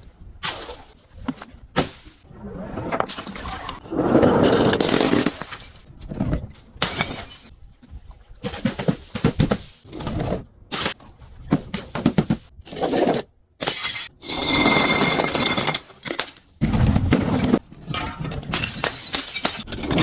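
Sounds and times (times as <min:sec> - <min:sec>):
glass shattering: 0:06.8 - 0:07.5, 0:17.9 - 0:20.0.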